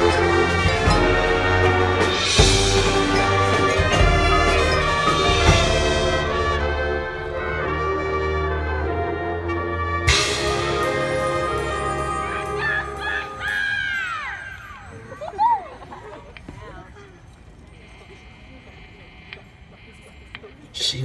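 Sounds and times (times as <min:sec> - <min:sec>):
brass chords: 0:00.0 - 0:13.5
drums: 0:00.0 - 0:21.0.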